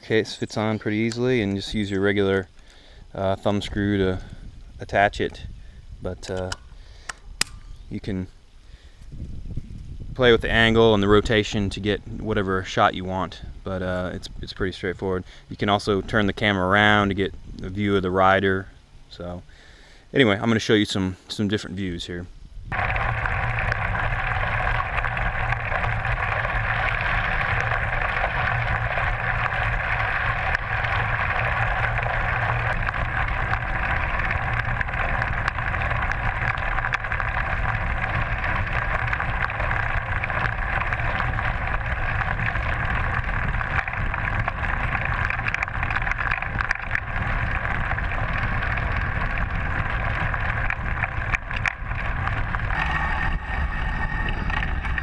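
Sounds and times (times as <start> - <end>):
bicycle riding rumble: 0.0 - 20.1, 22.3 - 55.0
wind rushing: 47.0 - 55.0.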